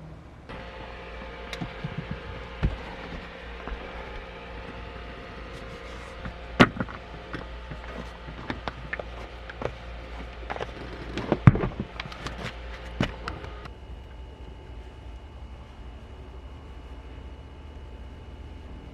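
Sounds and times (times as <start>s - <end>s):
steady low hum: 0.0s - 18.9s
sharp clicks and knocks: 0.5s - 13.7s.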